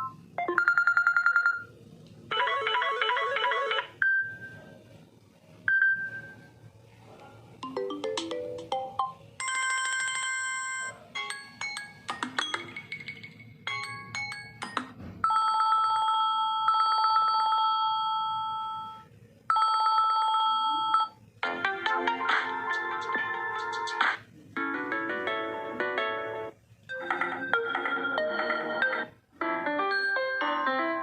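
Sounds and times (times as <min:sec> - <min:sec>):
phone ringtone melodies: 0:00.0 - 0:01.7, 0:02.3 - 0:04.7, 0:07.6 - 0:24.0, 0:26.9 - 0:31.0.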